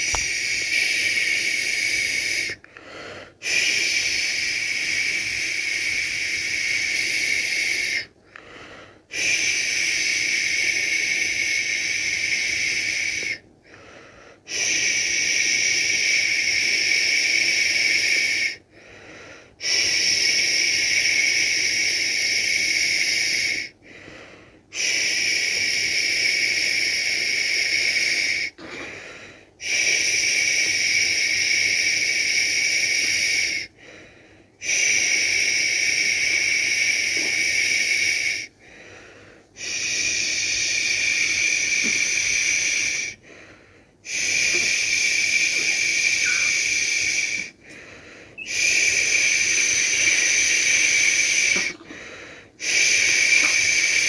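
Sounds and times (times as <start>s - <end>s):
person shushing: 44.1s - 47.5s, 48.4s - 54.0s.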